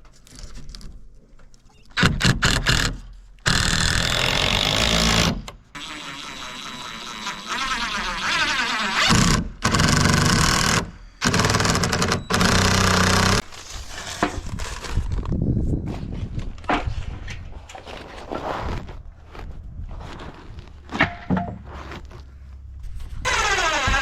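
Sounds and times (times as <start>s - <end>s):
power drill bursts: 3.5s - 13.4s, 23.3s - 24.0s
knocks and handling: 16.3s - 23.2s.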